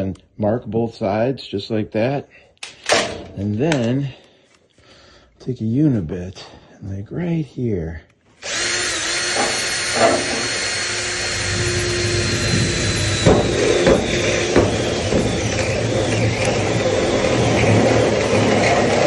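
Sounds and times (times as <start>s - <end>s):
power drill boring sheet metal: 8.4s - 19.0s.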